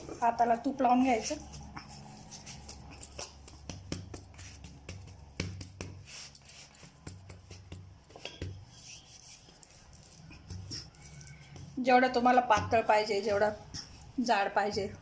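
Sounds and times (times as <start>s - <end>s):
hands pressing sticky mixture: 1.5s - 14.1s.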